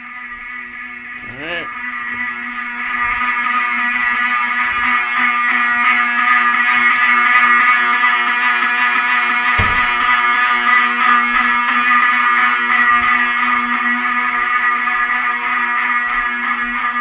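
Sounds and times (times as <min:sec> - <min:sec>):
fire alarm steady tone: 0:00.0 - 0:17.0
low thump: 0:09.5 - 0:10.3.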